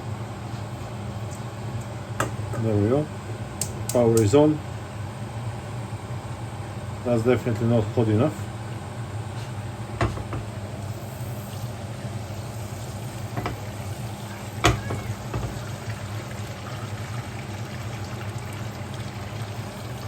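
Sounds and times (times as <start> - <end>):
schnitzel sizzling in a pan: 10.0 - 20.0.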